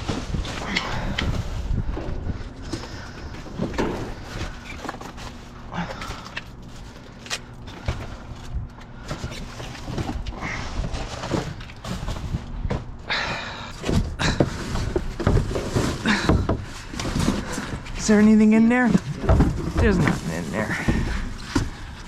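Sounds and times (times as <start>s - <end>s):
low steady hum: 0.0s - 22.0s
knocks and clunks in a dumpster: 13.8s - 22.0s.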